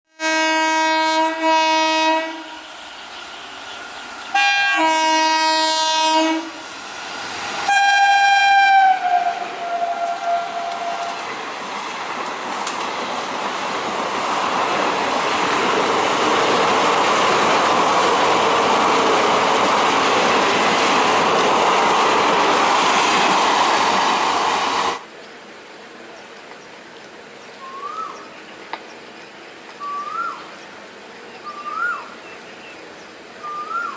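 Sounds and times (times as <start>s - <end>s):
train horn blasts: 0.1s - 2.9s, 4.3s - 6.7s, 7.6s - 11.3s
train rumble and wheel clatter: 0.7s - 33.9s.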